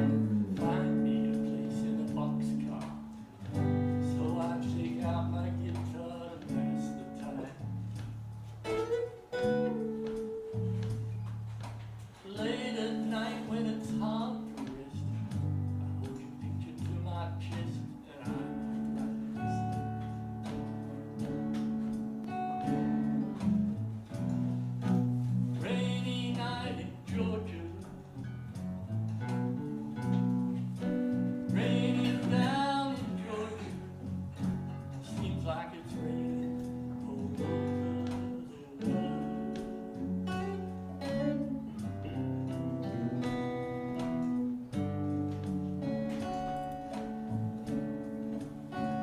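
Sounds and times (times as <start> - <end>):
person singing: 0.0 - 1.6, 12.2 - 15.1, 31.5 - 34.1, 35.1 - 39.8
acoustic guitar chords: 0.0 - 49.0.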